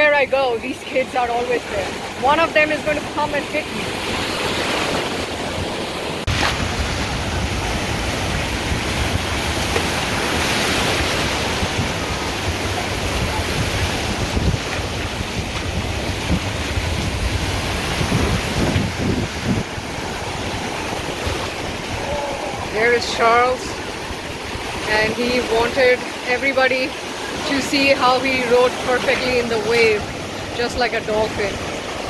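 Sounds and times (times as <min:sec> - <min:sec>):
ocean surf breaking: 0:00.0 - 0:32.0
wind buffeting microphone: 0:00.0 - 0:32.0.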